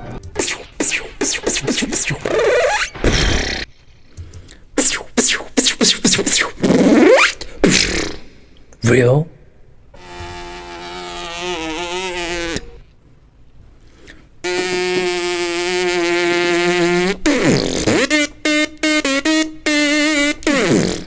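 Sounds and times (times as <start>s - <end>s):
swooping tone: 0.0s - 3.6s.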